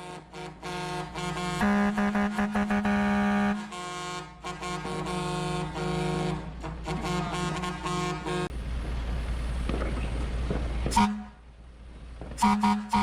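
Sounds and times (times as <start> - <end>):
air horn blasts: 0.0 - 8.5, 10.9 - 11.4, 12.4 - 13.0.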